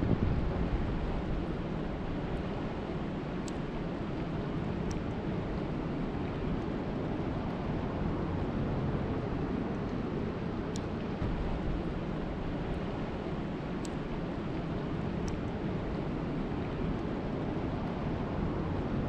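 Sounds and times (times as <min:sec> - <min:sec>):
faint ticks: 0:02.4 - 0:05.7, 0:13.8 - 0:16.0.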